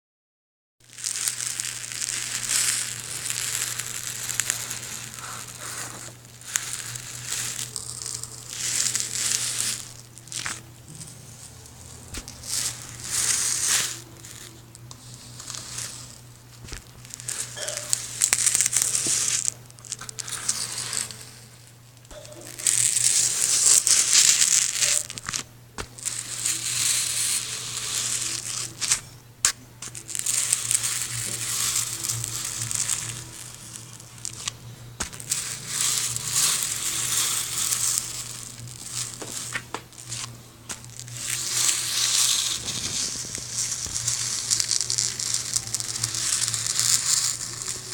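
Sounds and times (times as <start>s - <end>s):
crinkling crumpling noise: 0.8s - 47.9s
steady low hum: 33.0s - 35.7s, 38.4s - 41.7s.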